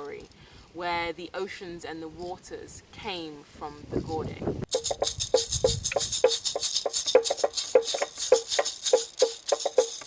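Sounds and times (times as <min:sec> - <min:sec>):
maraca shaken: 0:04.7 - 0:10.0.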